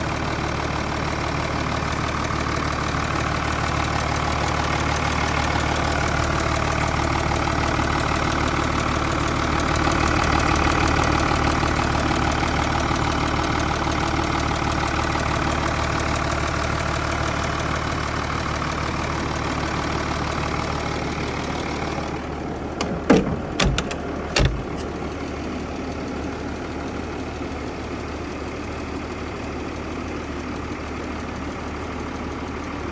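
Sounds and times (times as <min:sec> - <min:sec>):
diesel engine running with knock: 0:00.0 - 0:32.9
sharp thumps: 0:22.8 - 0:25.0.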